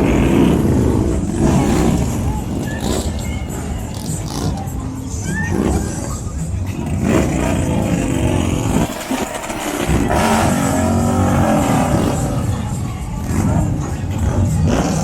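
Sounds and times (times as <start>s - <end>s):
vehicle engines revving: 0.0s - 15.0s.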